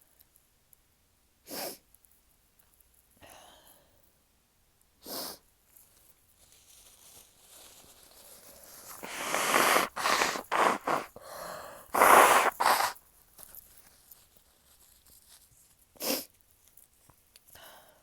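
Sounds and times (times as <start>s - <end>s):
woman sneezing: 9.0s - 11.1s, 12.0s - 13.0s.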